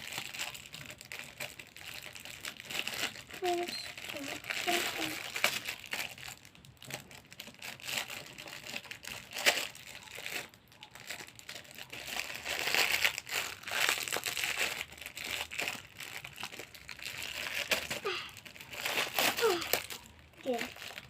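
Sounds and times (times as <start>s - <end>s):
packaging crinkling: 0.0s - 21.0s.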